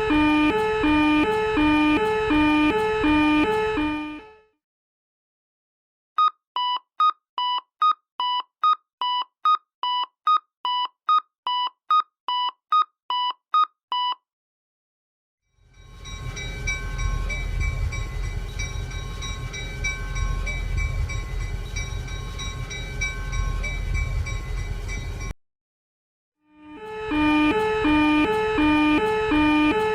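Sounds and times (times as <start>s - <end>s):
railroad crossing bell ringing: 0.0s - 4.3s, 15.6s - 25.3s
train passing with low rumble: 15.6s - 25.3s.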